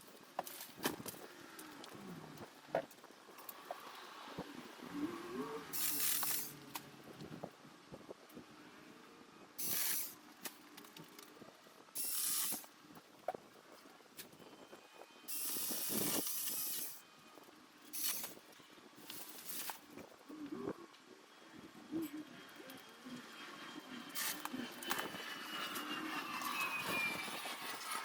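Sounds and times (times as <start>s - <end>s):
short bursts of hissing: 5.7s - 6.5s, 9.6s - 10.2s, 12.0s - 12.6s.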